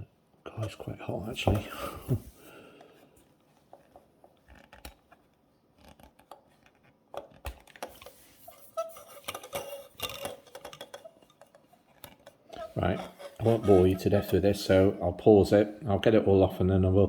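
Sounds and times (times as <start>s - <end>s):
scraper scraping varnish off wood: 12.6s - 15.0s.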